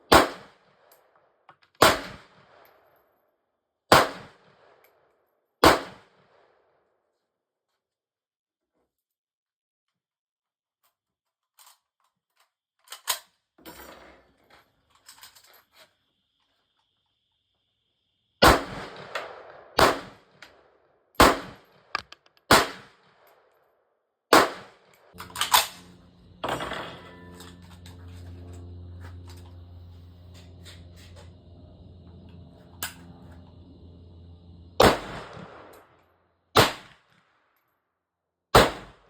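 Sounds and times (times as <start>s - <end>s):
gunshots: 0.1s - 0.6s, 1.8s - 2.5s, 3.9s - 4.4s, 5.6s - 6.1s, 18.4s - 20.4s, 21.2s - 23.2s, 24.3s - 25.8s, 34.8s - 35.7s, 36.6s - 37.0s, 38.6s - 39.0s
metallic gun handling clicks: 21.9s - 22.5s, 25.2s - 25.9s.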